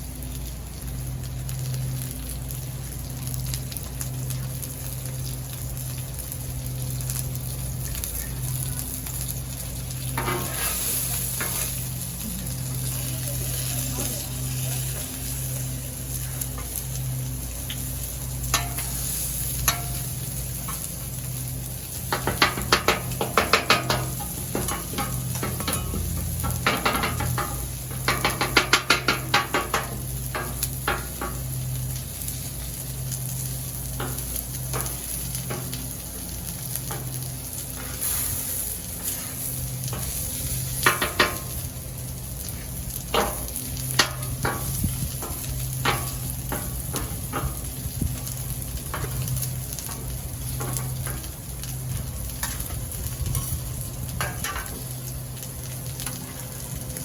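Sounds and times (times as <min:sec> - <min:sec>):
food sizzling on a griddle: 0:00.0 - 0:57.0
steady low hum: 0:00.0 - 0:57.0
metal spatula clicking on griddle: 0:18.5 - 0:20.9, 0:22.1 - 0:31.4.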